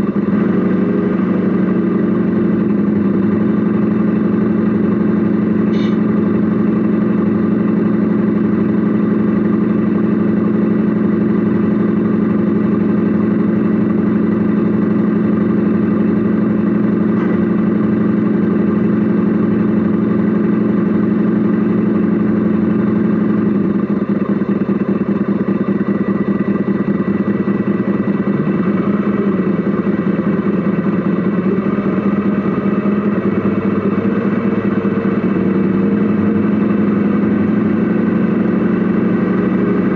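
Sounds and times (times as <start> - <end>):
model truck engine drone: 0.0 - 39.9.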